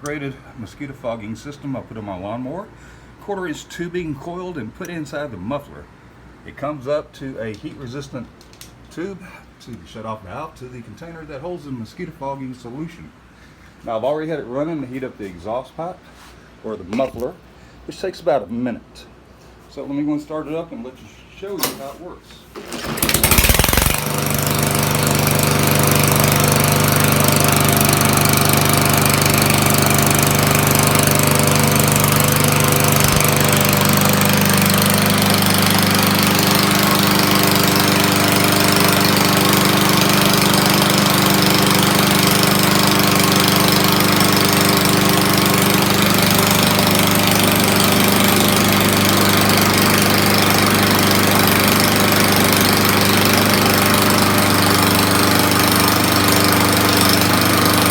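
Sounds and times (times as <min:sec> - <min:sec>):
lawnmower engine running: 0:22.6 - 0:57.9.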